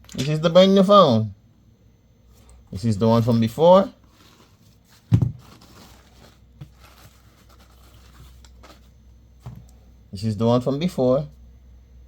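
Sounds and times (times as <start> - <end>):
dull thump: 5.1 - 5.5.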